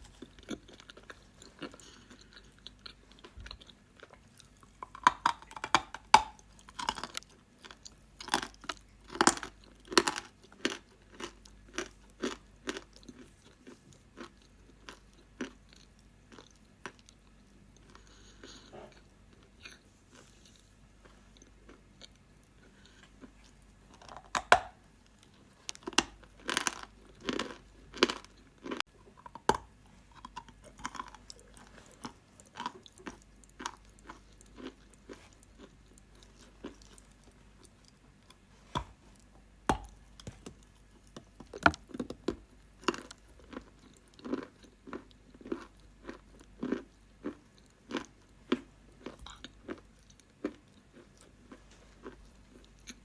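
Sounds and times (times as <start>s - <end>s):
person chewing crunchy chalk: 0.0s - 53.0s.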